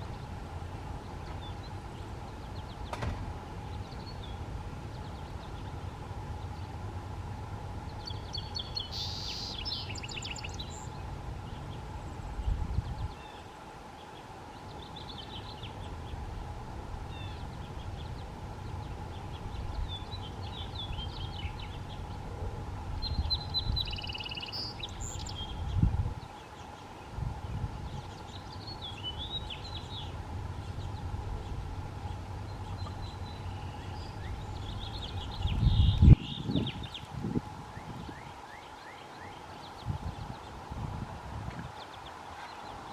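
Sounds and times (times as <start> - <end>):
faint steady hum: 0.0 - 42.9
songbirds chirping: 0.0 - 42.9
loud knock: 2.9 - 3.3.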